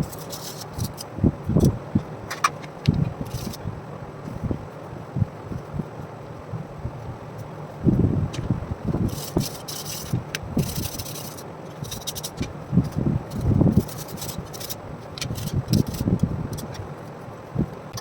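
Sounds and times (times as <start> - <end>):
hand scraping metal: 0.0 - 3.7, 8.3 - 17.1.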